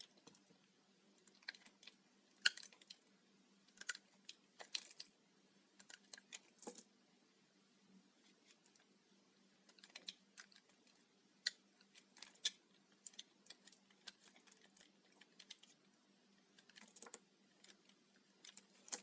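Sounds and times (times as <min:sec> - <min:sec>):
puffed soap crackling and crunching: 0:01.2 - 0:03.0, 0:03.6 - 0:05.2, 0:05.8 - 0:06.9, 0:09.6 - 0:19.0.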